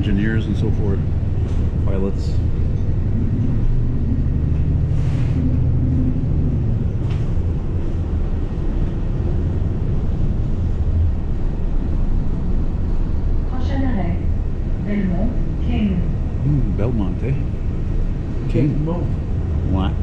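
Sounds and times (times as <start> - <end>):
bus engine and road rumble: 0.0 - 20.0
low hum: 0.0 - 20.0.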